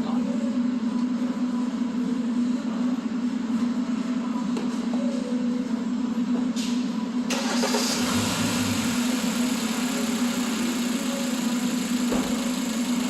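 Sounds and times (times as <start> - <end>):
car engine starting and idling: 7.3 - 13.0.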